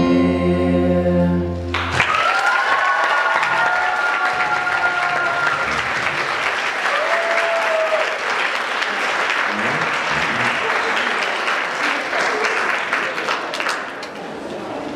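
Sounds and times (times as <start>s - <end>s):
audience applauding: 1.7s - 14.7s.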